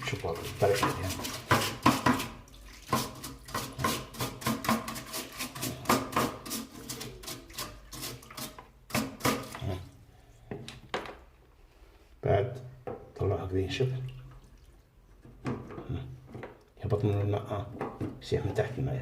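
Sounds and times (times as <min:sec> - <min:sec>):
running water: 0:00.0 - 0:10.0, 0:13.4 - 0:18.7
plastic knocking and clattering: 0:10.5 - 0:11.3, 0:15.2 - 0:18.3.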